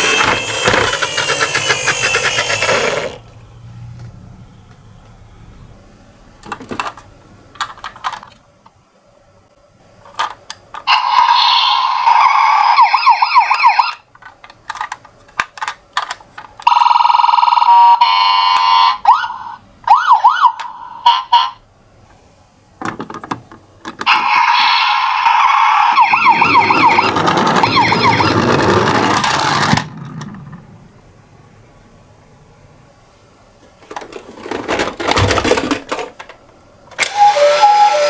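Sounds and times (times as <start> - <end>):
toy electronic siren: 0.0 - 3.2, 10.9 - 14.0, 16.6 - 21.6, 24.1 - 28.6, 37.0 - 38.0.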